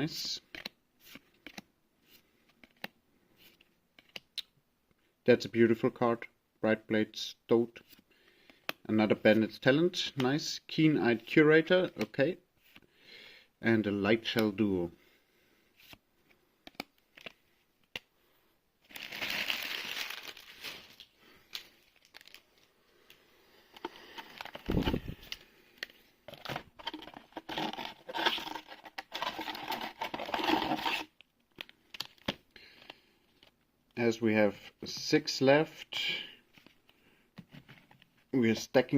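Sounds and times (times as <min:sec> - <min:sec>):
foil wrapper tearing and crinkling: 0:18.9 - 0:21.1.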